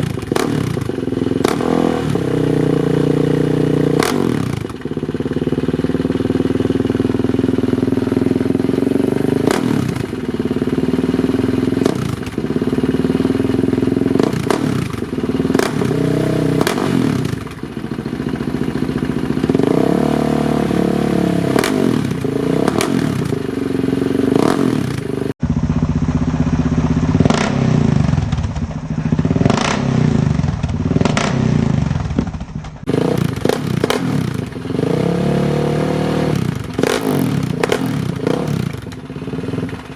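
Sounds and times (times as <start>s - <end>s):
engine revving up and down: 1.4s - 4.7s, 9.1s - 10.1s, 14.1s - 17.4s, 19.5s - 25.4s, 26.6s - 28.4s, 29.2s - 32.2s, 32.8s - 39.8s.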